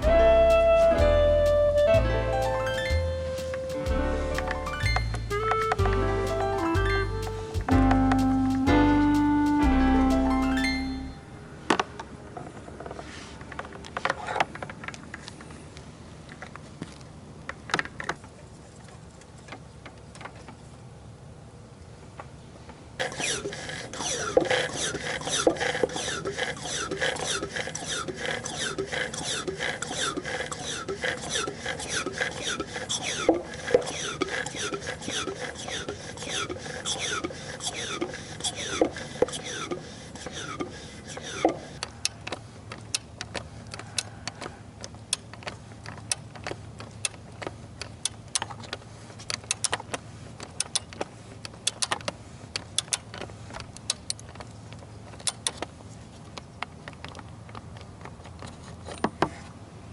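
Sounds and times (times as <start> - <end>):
hand pump squeaking strokes: 0.0 - 11.4, 23.0 - 59.4.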